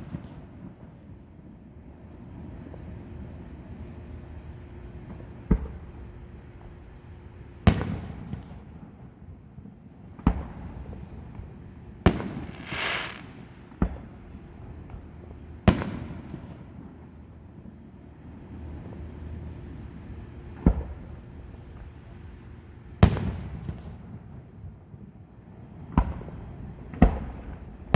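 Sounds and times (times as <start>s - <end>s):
fireworks bangs: 12.0s - 15.1s
firework hiss: 12.1s - 13.9s.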